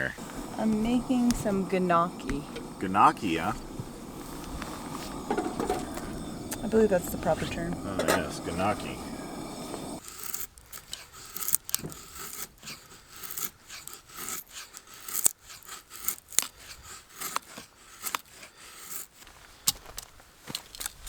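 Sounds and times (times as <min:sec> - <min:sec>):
utensil scraping and tapping pan: 0:04.4 - 0:06.1, 0:07.9 - 0:08.7.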